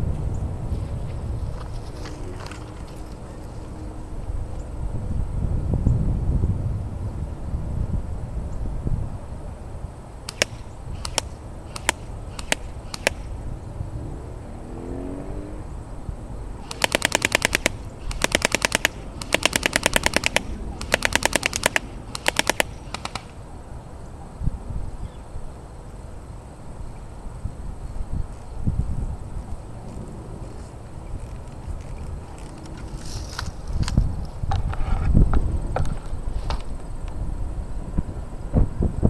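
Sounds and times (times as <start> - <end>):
wind rumble on microphone: 0.0 - 39.0
airsoft gun full-auto bursts: 10.3 - 13.3, 16.6 - 23.4
airsoft gun single shots: 10.3 - 13.4, 16.6 - 23.4.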